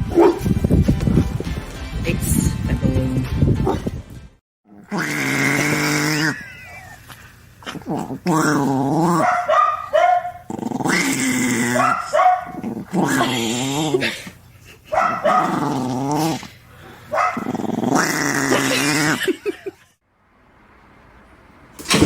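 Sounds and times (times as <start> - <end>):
dog growl-howling: 4.7 - 7.0, 7.6 - 9.4, 10.3 - 14.2, 15.2 - 16.5, 17.3 - 19.4.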